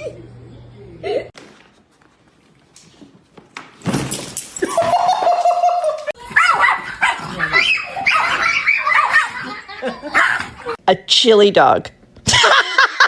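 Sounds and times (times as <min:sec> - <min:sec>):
dog whining and yelping: 0:06.3 - 0:09.5.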